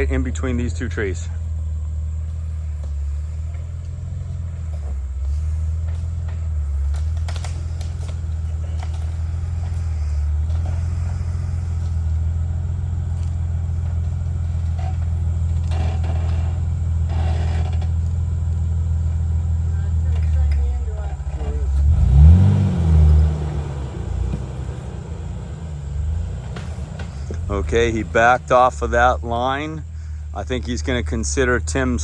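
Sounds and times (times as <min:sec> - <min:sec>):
car engine rumbling at low revs: 0:00.0 - 0:32.0.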